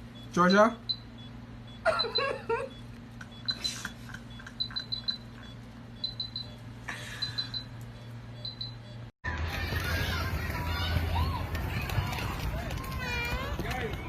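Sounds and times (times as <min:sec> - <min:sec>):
high-pitched electronic beeps: 0:00.0 - 0:06.6, 0:07.2 - 0:09.1.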